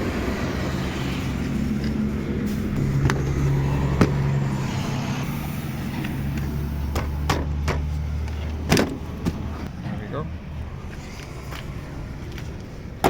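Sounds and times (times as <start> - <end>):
steady low hum: 2.2 - 7.3.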